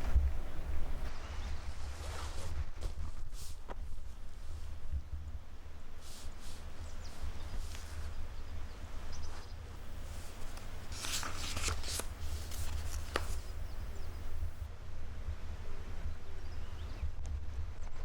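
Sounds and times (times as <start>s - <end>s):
rustling: 0.0s - 4.9s, 6.0s - 8.2s, 9.3s - 14.6s.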